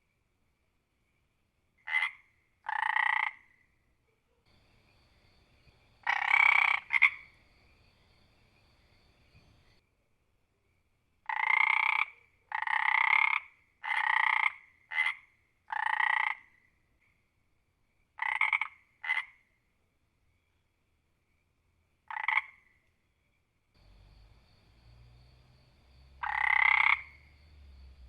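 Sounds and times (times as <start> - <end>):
frog croaking: 1.8 - 3.6, 4.5 - 9.8, 11.3 - 16.6, 18.2 - 19.5, 22.1 - 22.8, 23.8 - 28.0.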